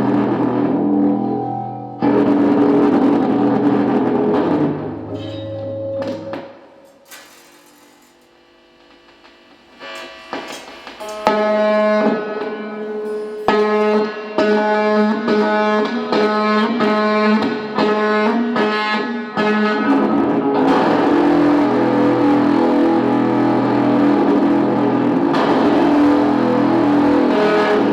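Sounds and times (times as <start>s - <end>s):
electric guitar feedback drone: 0.0s - 6.8s, 8.5s - 27.9s
scattered hits: 0.0s - 14.6s.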